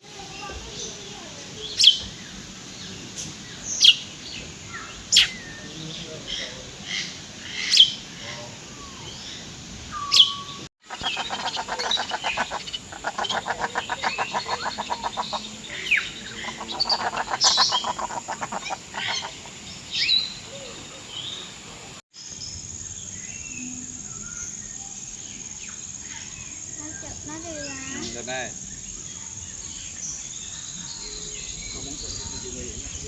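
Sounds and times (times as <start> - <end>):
birds whistling and chirping: 4.7 - 6.0, 8.7 - 21.6, 27.7 - 32.9
fast rattling bird trill: 10.8 - 20.6.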